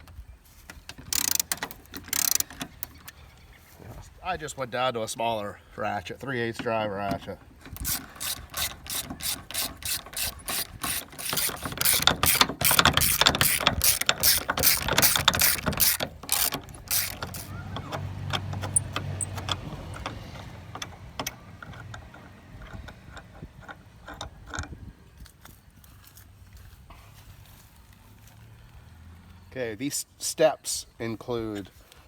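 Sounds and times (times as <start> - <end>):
ratchet clicking: 1.1 - 3.1, 7.6 - 24.8.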